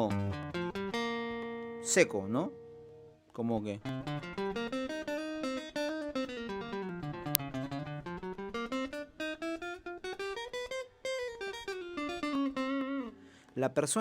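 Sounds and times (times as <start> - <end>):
clean electric guitar notes: 3.8 - 13.2.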